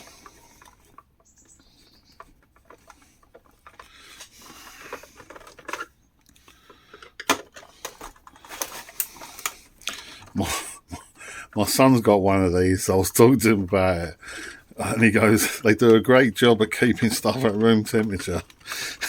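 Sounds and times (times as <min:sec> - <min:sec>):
tools tapping plastic casing: 0:00.0 - 0:10.4, 0:14.9 - 0:19.0.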